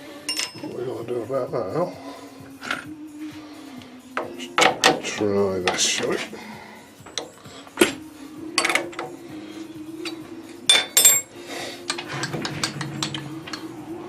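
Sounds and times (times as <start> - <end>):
metal parts clinking: 0.3 - 0.7, 10.0 - 11.3, 11.9 - 13.7.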